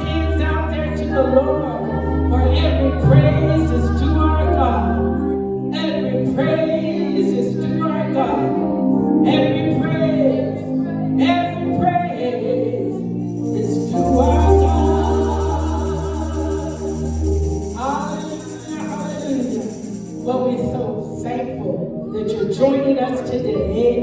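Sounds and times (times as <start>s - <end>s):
gospel singing voices: 12.2s - 21.2s
sustained bass accompaniment: 13.2s - 20.8s.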